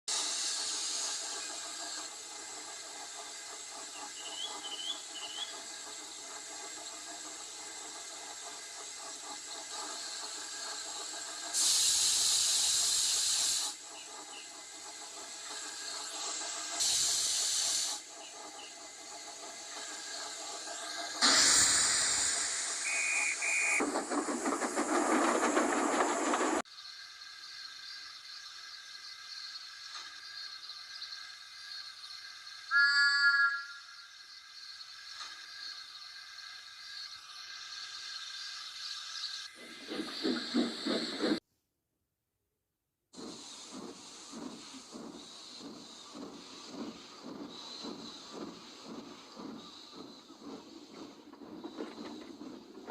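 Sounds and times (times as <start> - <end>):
loud hissing bursts: 0.1 - 26.6, 43.2 - 52.8
steady hissing: 0.1 - 32.7, 34.1 - 41.4, 43.2 - 52.9
faint chirps: 26.7 - 41.4
brief tone: 32.7 - 34.1.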